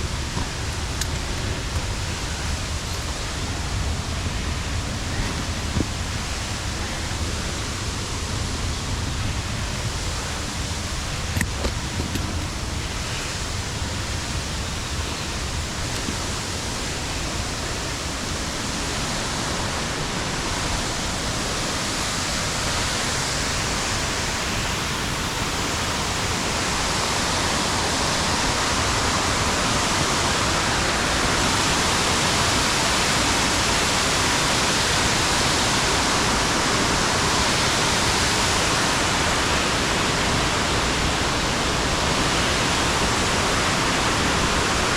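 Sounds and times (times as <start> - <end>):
waterfall roaring: 0.0 - 44.9.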